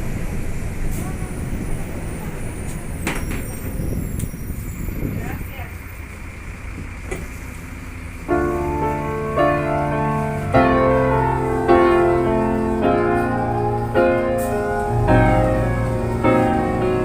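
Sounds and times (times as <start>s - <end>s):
bus engine rumble: 0.0s - 17.0s
piano chords: 8.2s - 17.0s.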